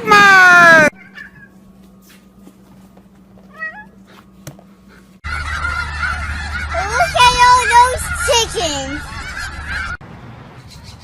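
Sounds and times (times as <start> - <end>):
cat meowing: 3.5 - 4.0.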